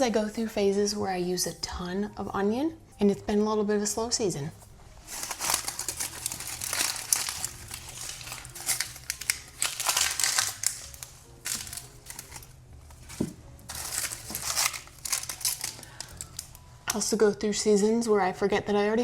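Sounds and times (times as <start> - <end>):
onions crinkling and crackling: 4.9 - 17.0.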